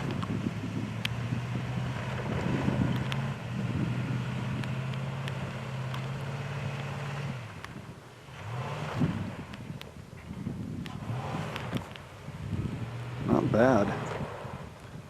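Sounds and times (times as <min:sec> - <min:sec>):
pickup truck engine running: 0:00.0 - 0:15.0
wind buffeting microphone: 0:00.0 - 0:15.0.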